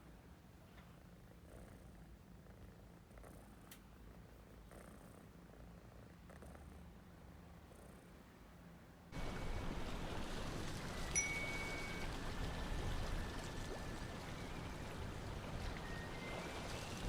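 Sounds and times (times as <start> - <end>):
kitten purring: 0.1 - 8.7.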